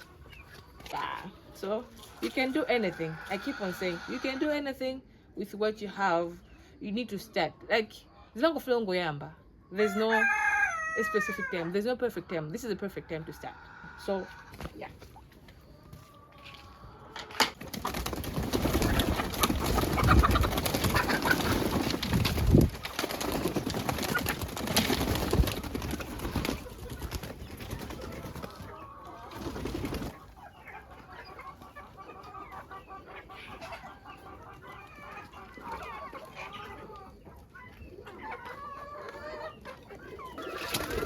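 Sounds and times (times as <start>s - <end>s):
chickens clucking: 0.0s - 41.0s
doves cooing: 17.8s - 41.0s.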